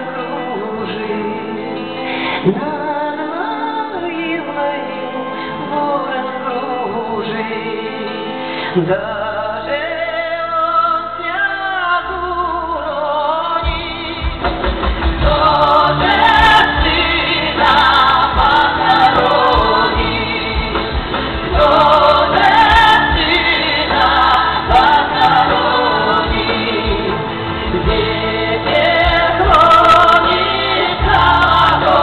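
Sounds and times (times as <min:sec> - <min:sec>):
person singing live: 0:00.0 - 0:32.0
bass: 0:08.7 - 0:32.0
drums: 0:12.7 - 0:32.0
band playing: 0:13.6 - 0:32.0.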